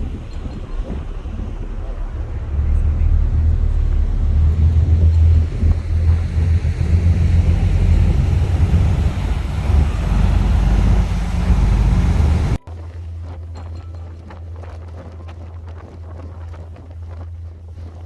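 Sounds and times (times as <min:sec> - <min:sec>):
ferry engines droning: 0:00.0 - 0:12.6
wind buffeting microphone: 0:00.0 - 0:18.0.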